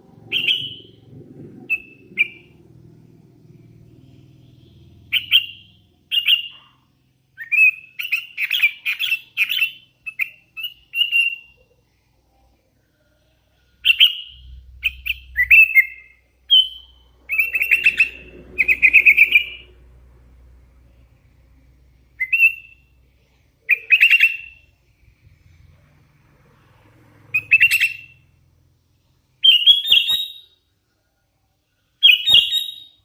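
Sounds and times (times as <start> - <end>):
bird chirping and trilling: 0.0 - 11.7, 13.8 - 20.0, 22.1 - 24.7, 27.3 - 28.4, 29.4 - 30.6, 32.0 - 33.0.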